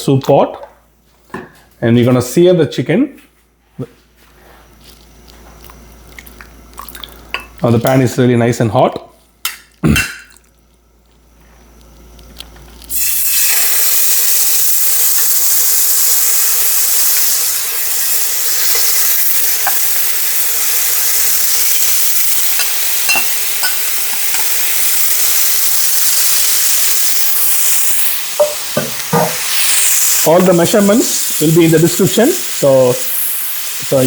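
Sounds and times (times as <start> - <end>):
chicken sizzling in hot oil: 12.8 - 34.0.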